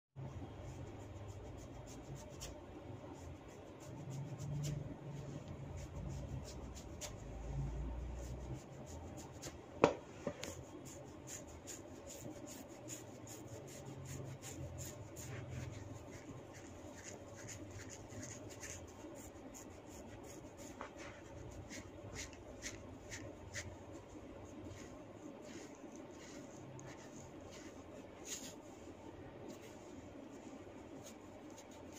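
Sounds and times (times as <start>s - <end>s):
hands rubbing skin: 10.3s - 31.9s.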